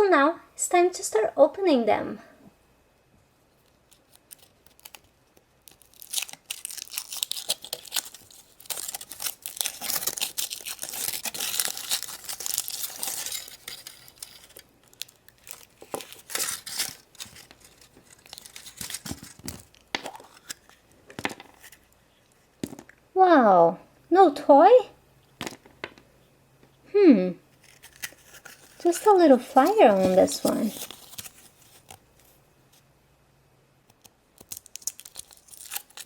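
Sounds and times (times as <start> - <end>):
foil wrapper crinkling: 3.6 - 22.0, 27.6 - 32.4, 34.4 - 36.0.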